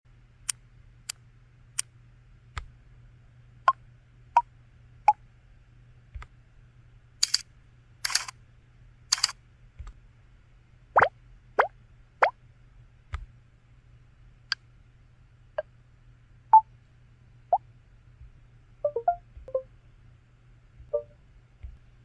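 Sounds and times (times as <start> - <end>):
low steady hum: 0.1 - 22.0
phone clicks and blips: 8.1 - 8.3, 18.9 - 19.6
upward-sweeping blips: 18.9 - 19.7, 21.0 - 21.2.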